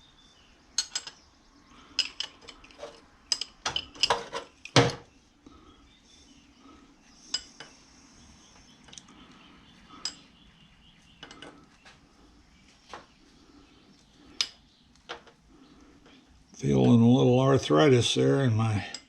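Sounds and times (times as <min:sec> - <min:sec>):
hand tools clinking on metal: 0:00.8 - 0:01.2, 0:02.0 - 0:05.0, 0:10.0 - 0:10.3.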